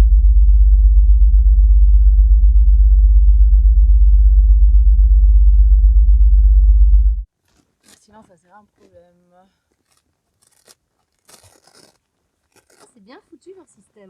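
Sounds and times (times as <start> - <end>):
low fluttering hum: 0.0 - 7.3.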